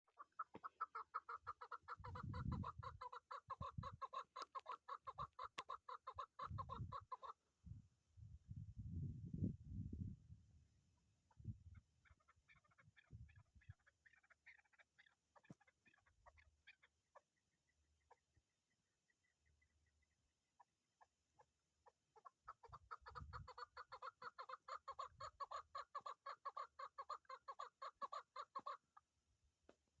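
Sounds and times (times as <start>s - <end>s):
partridge clucking call: 0.0s - 7.4s, 12.0s - 16.9s, 22.2s - 28.8s
partridge clucking: 0.1s - 6.2s.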